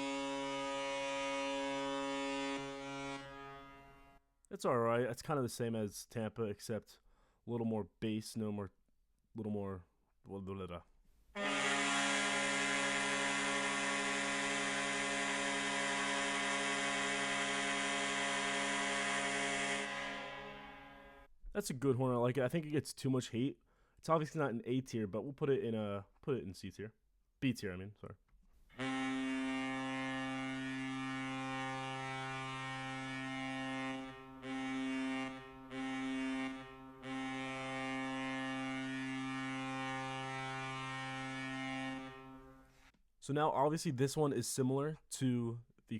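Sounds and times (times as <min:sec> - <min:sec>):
arena goal horn blast: 0:00.0 - 0:04.2, 0:11.4 - 0:21.3, 0:28.7 - 0:42.8.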